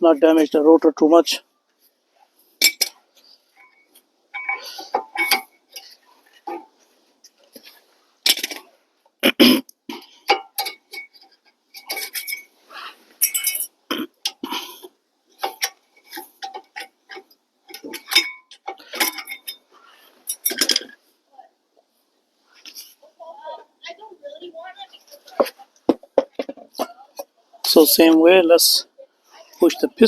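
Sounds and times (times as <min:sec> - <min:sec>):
metal tools and parts clinking: 0:02.6 - 0:08.7, 0:09.9 - 0:12.6, 0:13.2 - 0:14.8, 0:15.4 - 0:21.1.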